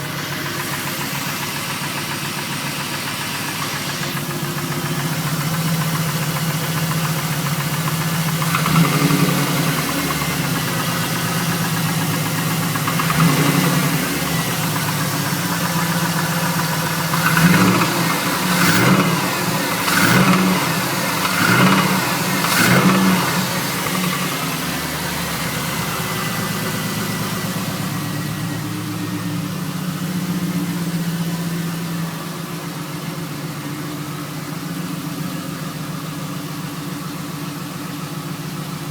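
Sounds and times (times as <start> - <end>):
car engine idling and revving: 0.0 - 38.9.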